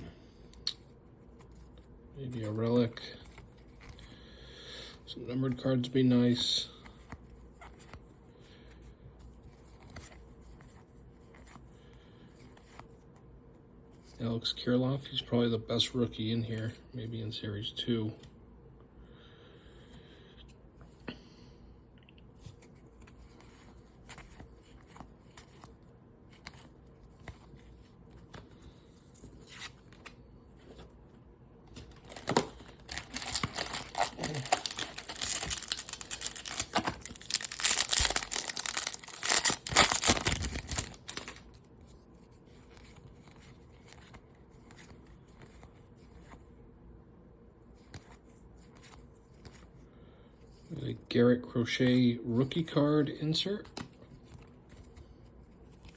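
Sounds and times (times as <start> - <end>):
trading cards being handled: 22.2 - 46.5
foil wrapper crinkling and tearing: 31.8 - 41.5.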